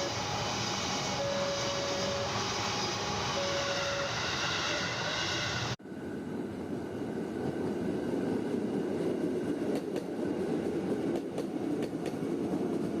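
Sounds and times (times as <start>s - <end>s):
electric train running: 0.0s - 5.8s.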